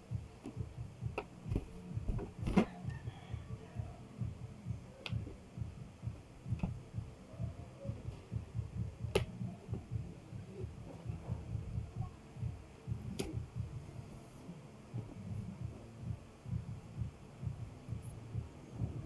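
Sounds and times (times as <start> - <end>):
rubbing and handling noise: 0.4 - 3.0, 12.9 - 19.0.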